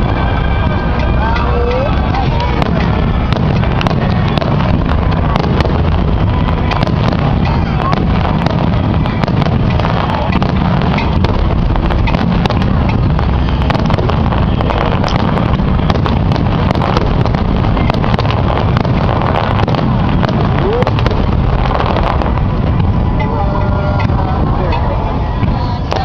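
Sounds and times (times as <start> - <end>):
fireworks bangs and crackles: 0.0 - 26.0
low rumble: 0.0 - 26.0.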